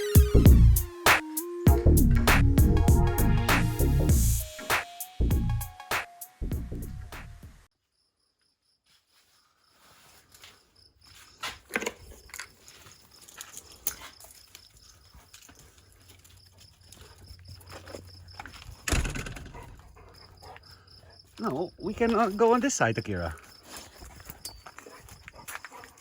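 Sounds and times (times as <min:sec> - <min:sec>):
music: 0:00.0 - 0:07.7
crickets chirping: 0:07.8 - 0:26.0
clicks and rustles: 0:11.4 - 0:19.9.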